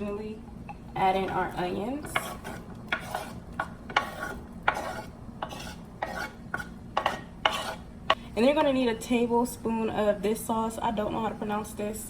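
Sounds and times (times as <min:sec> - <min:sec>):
spoon scraping and knocking pot: 0:00.7 - 0:07.8.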